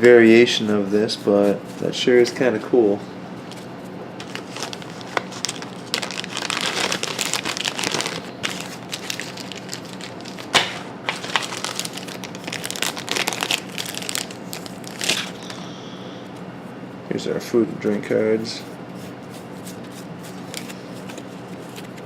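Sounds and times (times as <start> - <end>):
plastic packaging crinkling: 4.2 - 15.6.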